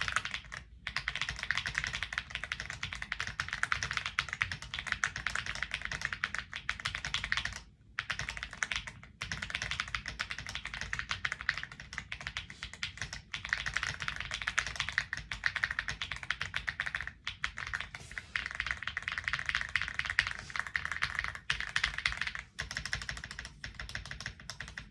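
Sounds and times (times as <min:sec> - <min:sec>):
fast mechanical keyboard typing: 0:00.0 - 0:24.9.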